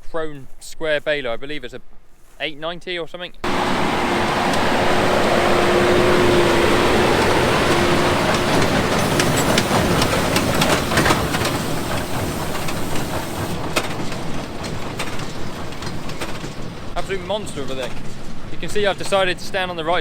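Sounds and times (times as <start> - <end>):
tractor engine running under load: 3.4 - 17.9
hay baler clacks and knocks: 3.5 - 19.3.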